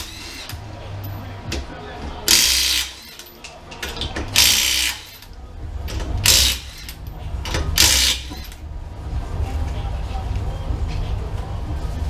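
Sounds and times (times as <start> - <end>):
impact wrench bursts: 0.0 - 0.6, 2.3 - 3.4, 4.3 - 5.3, 6.0 - 7.0, 7.7 - 8.6.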